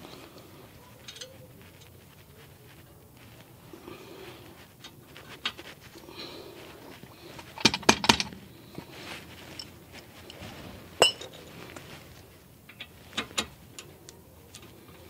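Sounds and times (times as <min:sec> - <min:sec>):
metallic clicks of hand tools: 0:07.4 - 0:08.4.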